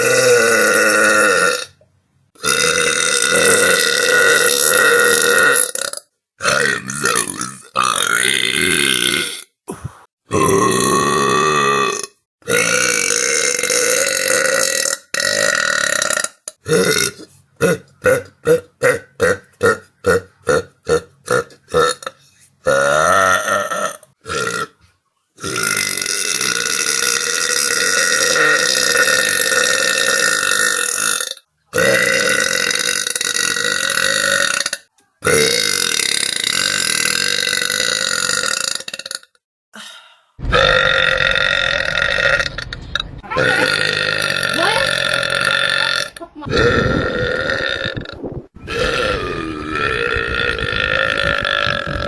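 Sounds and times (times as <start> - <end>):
person burping: 0.0 - 1.8, 2.4 - 24.8, 25.4 - 39.4, 40.5 - 52.0.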